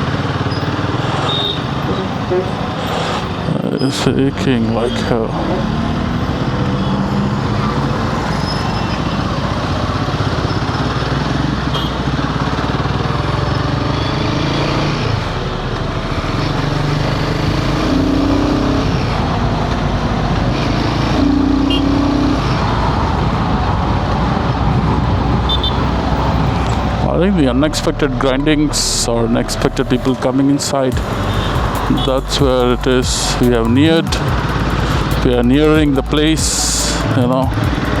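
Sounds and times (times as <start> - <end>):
road traffic: 0.0 - 38.0
motorcycle engine running: 5.4 - 27.0, 30.9 - 38.0.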